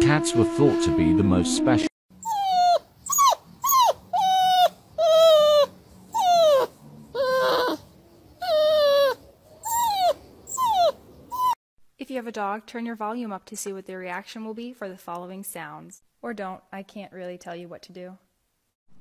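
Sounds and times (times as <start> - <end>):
dog whining: 2.2 - 11.6.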